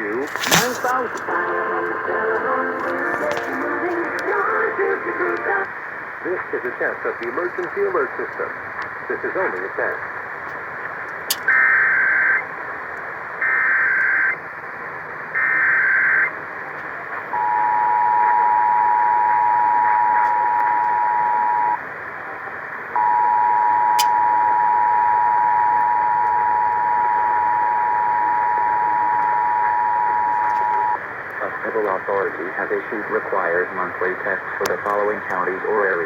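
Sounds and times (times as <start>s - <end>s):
radio hiss: 0.0s - 18.6s, 20.1s - 23.0s, 30.0s - 36.0s.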